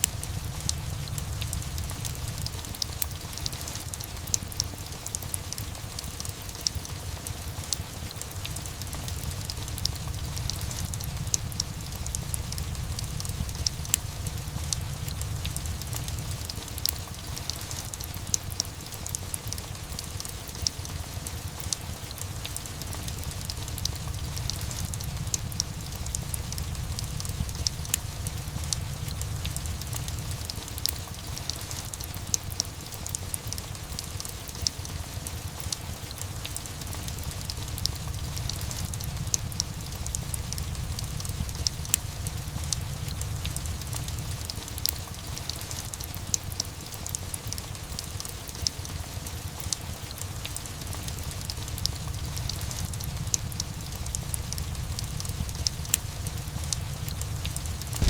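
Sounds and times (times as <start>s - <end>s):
fireplace crackling: 0.0s - 32.5s
steady rain: 0.0s - 58.0s.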